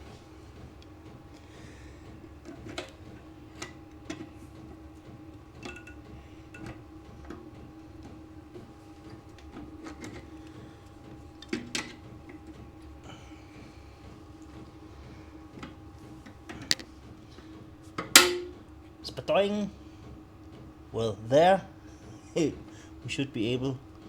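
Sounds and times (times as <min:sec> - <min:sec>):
steady background hum: 0:00.0 - 0:24.0
clicks of small parts handled: 0:16.6 - 0:16.9.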